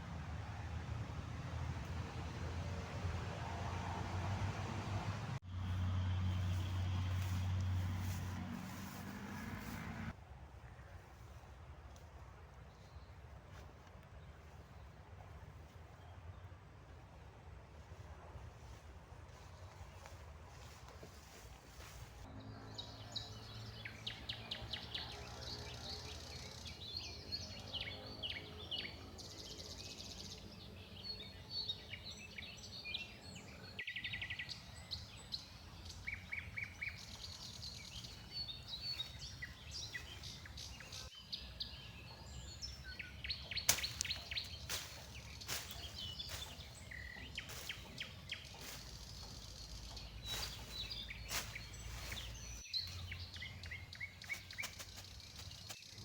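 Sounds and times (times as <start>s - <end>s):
birds chirping and trilling: 21.8s - 56.0s.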